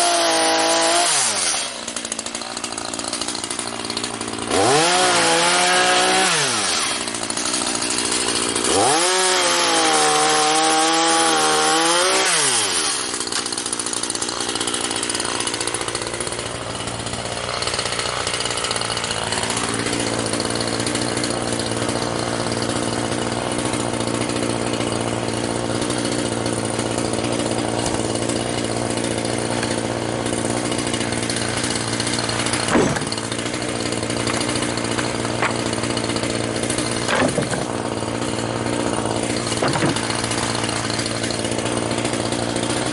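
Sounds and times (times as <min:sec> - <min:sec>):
chainsaw cutting wood: 0:00.0 - 0:42.9
sharp knocks: 0:32.5 - 0:33.4, 0:37.0 - 0:37.8, 0:39.0 - 0:40.6.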